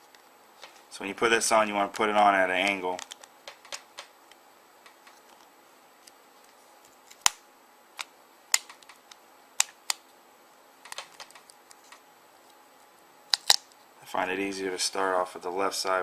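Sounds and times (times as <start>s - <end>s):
plastic clips snapping: 8.0s - 10.0s, 13.3s - 13.8s.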